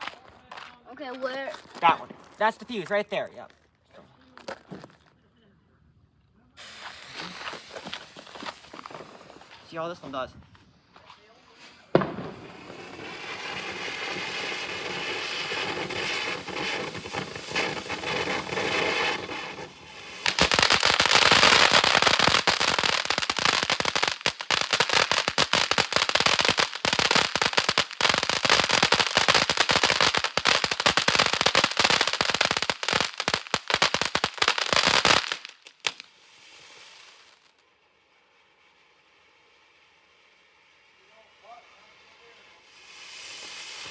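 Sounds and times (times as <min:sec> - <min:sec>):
firework crackling: 0:00.0 - 0:02.9, 0:06.6 - 0:43.9
firework fountain hissing: 0:06.6 - 0:43.9.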